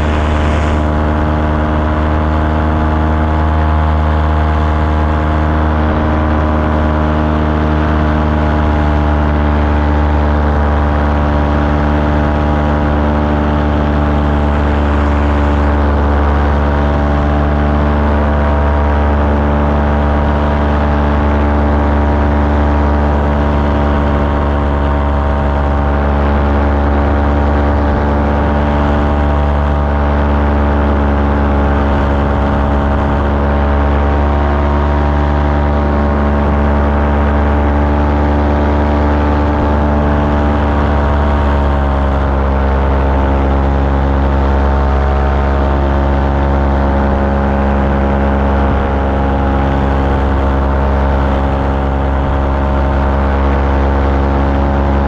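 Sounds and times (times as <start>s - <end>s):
propeller aircraft engine droning: 0.0s - 55.0s.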